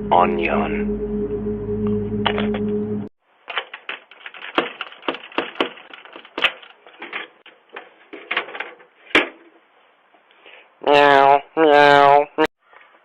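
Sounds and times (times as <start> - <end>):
irregular clicks and knocks: 3.4 - 9.5.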